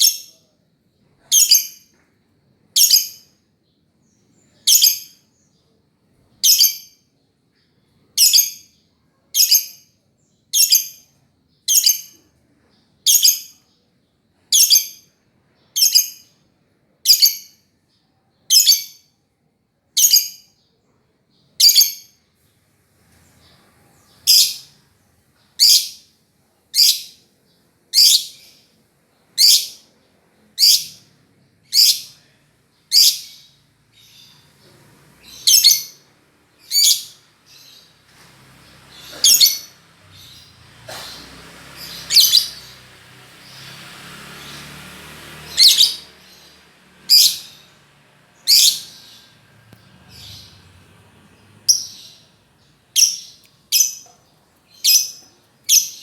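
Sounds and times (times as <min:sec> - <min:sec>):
soft noisy rustle: 0:22.2 - 0:25.6, 0:33.6 - 0:56.0
lovebird calling: 0:36.6 - 0:37.8, 0:38.9 - 0:42.8, 0:45.5 - 0:47.8, 0:48.4 - 0:49.4, 0:51.4 - 0:56.0.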